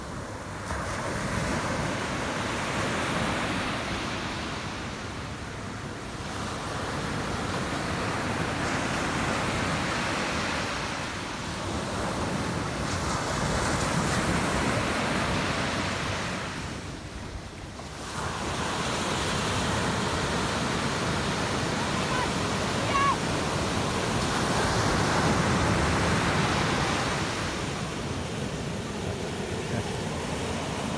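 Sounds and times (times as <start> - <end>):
ocean waves washing in: 17.9 - 30.9.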